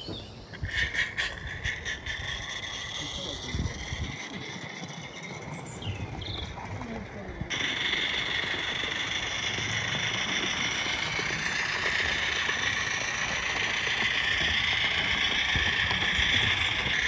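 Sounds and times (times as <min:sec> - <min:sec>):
steam locomotive hissing steam: 0:07.4 - 0:17.0.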